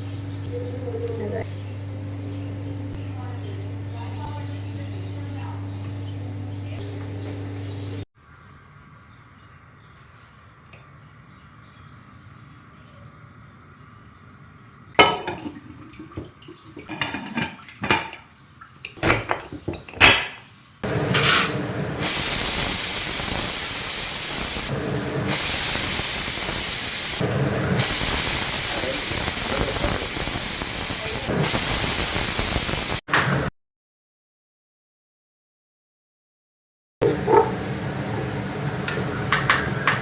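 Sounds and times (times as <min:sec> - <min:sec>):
kitchen handling clatter: 0:15.0 - 0:20.4
loud steady rushing hiss: 0:22.0 - 0:33.0.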